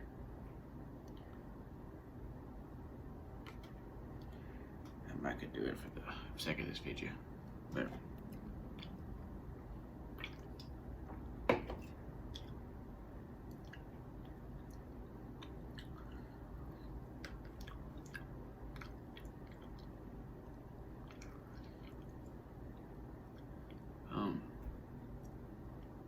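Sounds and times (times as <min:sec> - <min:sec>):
wet mouth clicks: 0:03.4 - 0:05.0, 0:08.2 - 0:09.0, 0:10.2 - 0:10.8, 0:13.5 - 0:14.8, 0:15.4 - 0:20.0, 0:21.0 - 0:22.4
person chewing corn: 0:08.3 - 0:09.2, 0:10.2 - 0:10.8, 0:13.4 - 0:23.9.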